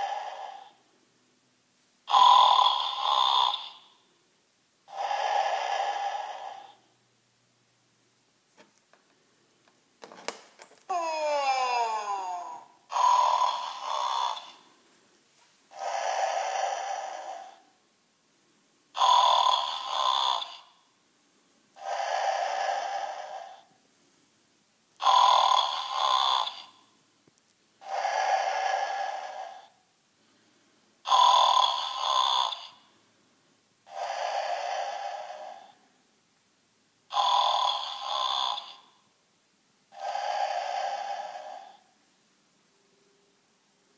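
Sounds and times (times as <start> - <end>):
toy speaker playing snores: 0.0 - 0.9, 2.0 - 4.0, 4.9 - 6.9, 10.9 - 14.7, 15.7 - 17.7, 18.9 - 20.8, 21.8 - 23.7, 25.0 - 26.8, 27.8 - 29.8, 31.0 - 32.9, 33.8 - 35.9, 37.1 - 39.0, 39.9 - 42.0.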